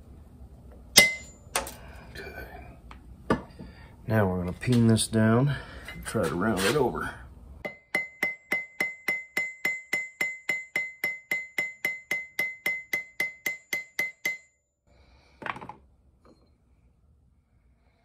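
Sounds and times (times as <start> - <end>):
hammer tapping on steel: 7.6 - 14.5.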